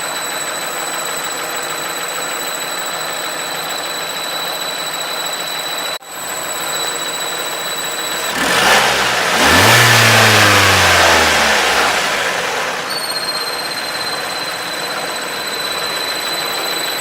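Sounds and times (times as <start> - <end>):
high-pitched whistle from engine: 0.0 - 17.0
car engine revving: 7.4 - 17.0.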